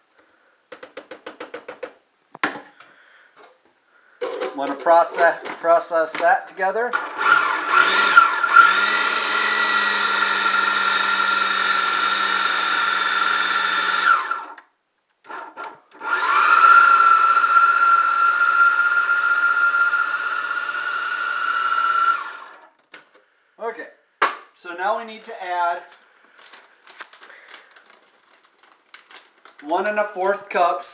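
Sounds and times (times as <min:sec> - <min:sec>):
food processor motor whining: 0:06.9 - 0:14.6, 0:15.3 - 0:22.7.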